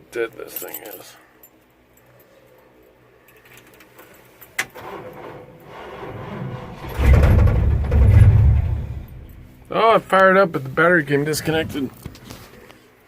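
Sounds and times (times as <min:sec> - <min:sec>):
truck engine cranking and starting: 0:04.7 - 0:09.7.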